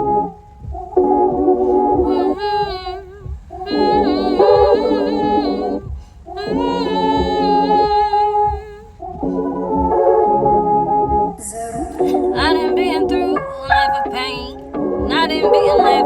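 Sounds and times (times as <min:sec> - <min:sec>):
steady low beat: 0:00.0 - 0:16.0
wordless hummed vocals: 0:02.1 - 0:08.9, 0:12.0 - 0:16.0.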